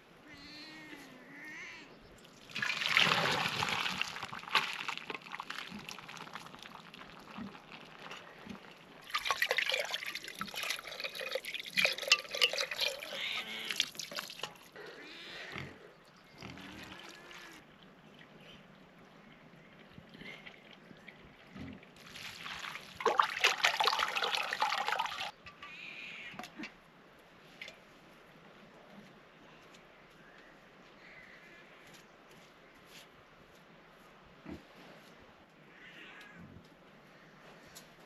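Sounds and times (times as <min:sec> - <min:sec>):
water pouring and splashing: 0:02.2 - 0:14.8, 0:20.5 - 0:25.4.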